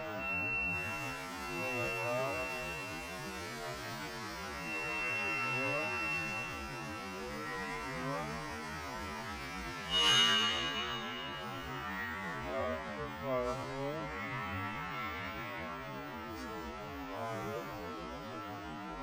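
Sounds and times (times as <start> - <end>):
thin high whine: 0.0 - 17.7
electric machinery humming: 0.6 - 8.4.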